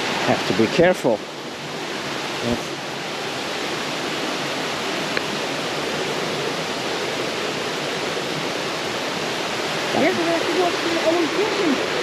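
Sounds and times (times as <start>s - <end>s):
stream rushing over rocks: 0.0s - 12.0s.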